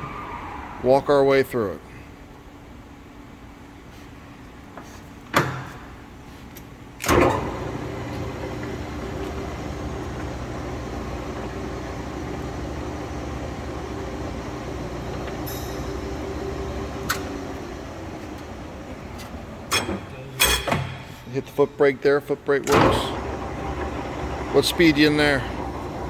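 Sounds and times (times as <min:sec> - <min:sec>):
lathe motor humming: 0:07.2 - 0:19.7, 0:22.6 - 0:26.0
sharp machine clunk: 0:19.7 - 0:21.3, 0:22.6 - 0:25.4.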